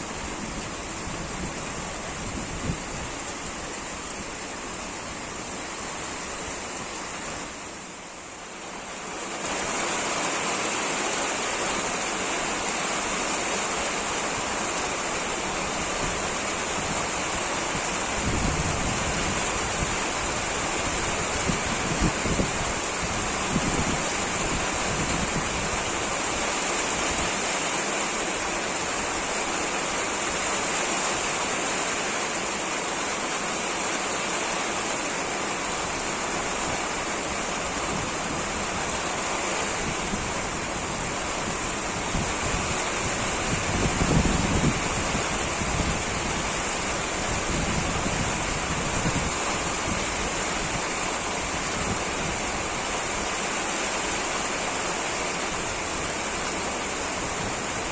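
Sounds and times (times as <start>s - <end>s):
heavy rain: 0.0s - 57.9s
wind buffeting microphone: 0.3s - 6.6s, 39.6s - 53.1s.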